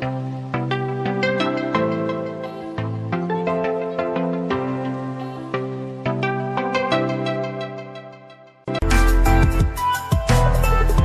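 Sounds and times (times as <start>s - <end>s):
music with heavy bass and beat: 8.7s - 11.0s.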